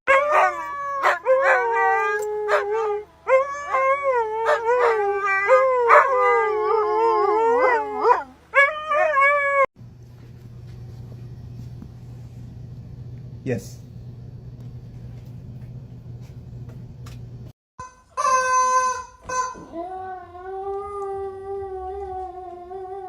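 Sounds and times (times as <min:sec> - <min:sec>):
dog howling: 0:00.1 - 0:09.7, 0:19.6 - 0:23.0
low steady hum: 0:00.1 - 0:17.5.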